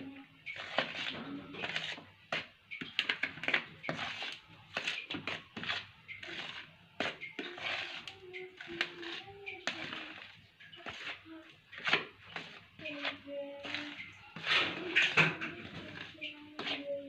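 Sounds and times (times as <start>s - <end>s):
dough scraping in a bowl: 0.0s - 17.0s.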